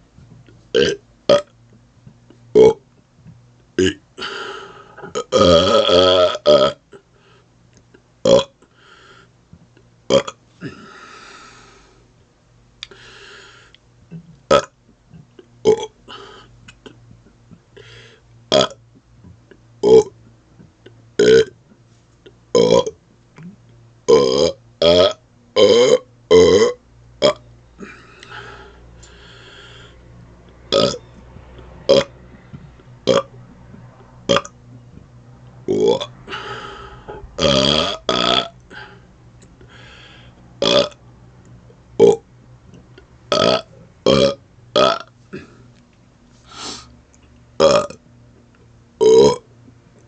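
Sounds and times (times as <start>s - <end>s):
man burping: 0.7s - 1.5s, 2.5s - 2.8s, 3.8s - 7.1s, 8.2s - 8.6s, 10.1s - 11.1s, 14.1s - 17.2s, 17.8s - 18.8s, 19.8s - 20.1s, 21.2s - 21.6s, 22.6s - 23.0s, 24.1s - 29.4s, 30.7s - 31.0s, 31.9s - 32.1s, 33.0s - 33.4s, 34.3s - 34.5s, 35.7s - 39.0s, 40.6s - 41.0s, 42.0s - 42.2s, 43.3s - 45.7s, 47.6s - 48.0s, 49.0s - 49.4s
breaths of air: 4.2s - 5.1s, 8.7s - 9.4s, 10.6s - 12.1s, 12.8s - 13.8s, 17.8s - 18.3s, 28.0s - 30.1s, 36.2s - 37.4s, 38.7s - 40.5s, 46.3s - 47.0s.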